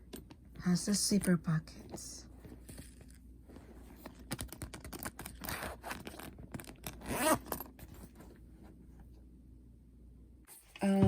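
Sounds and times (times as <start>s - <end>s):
backpack zipper zipping: 6.9s - 7.6s.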